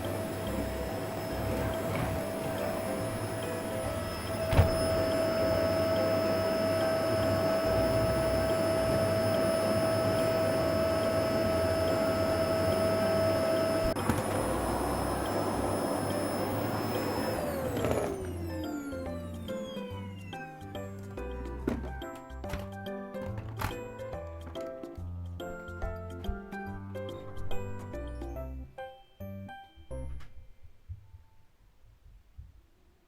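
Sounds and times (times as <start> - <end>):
vacuum motor spinning down: 0.0 - 20.9
vacuum cleaner running: 0.0 - 22.2.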